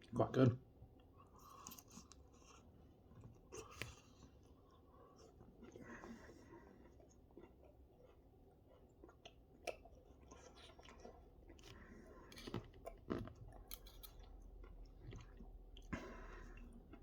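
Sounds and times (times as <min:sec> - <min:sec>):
person chewing food: 0:00.9 - 0:17.0
cutlery clicking on plate: 0:13.7 - 0:14.2.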